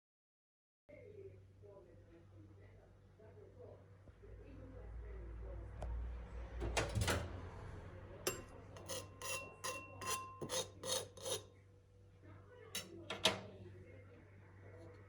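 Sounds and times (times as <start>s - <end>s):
rasping scrapes: 8.8s - 11.5s.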